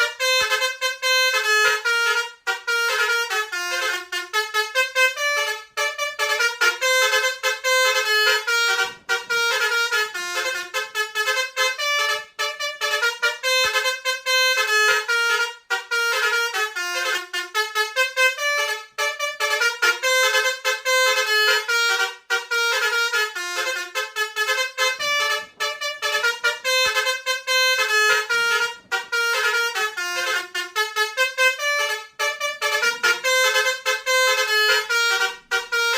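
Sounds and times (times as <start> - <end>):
musical bus horn tune: 0.0 - 35.9.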